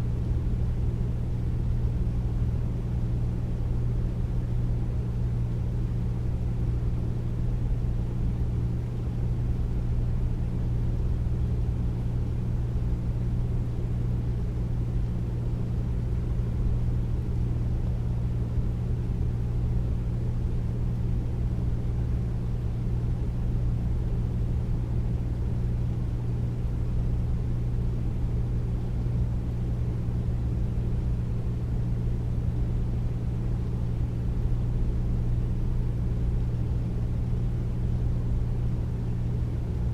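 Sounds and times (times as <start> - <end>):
air conditioner whooshing: 0.0 - 3.0.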